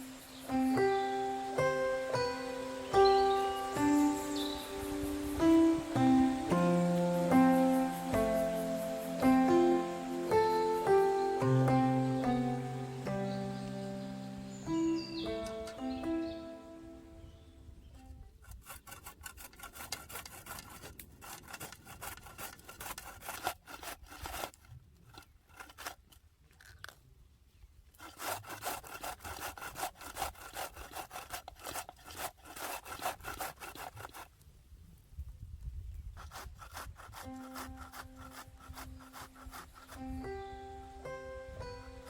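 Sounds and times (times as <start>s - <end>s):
cabbage being grated by hand: 18.4s - 26.2s, 27.9s - 34.3s, 36.1s - 40.5s.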